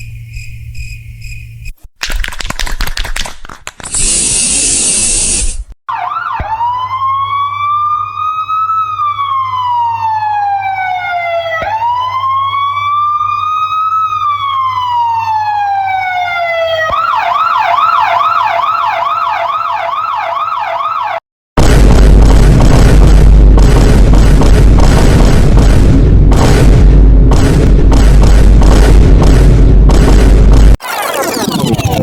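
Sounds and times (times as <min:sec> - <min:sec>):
siren wailing and yelping: 0:05.9 - 0:21.2
loud rough blast: 0:21.6 - 0:30.8.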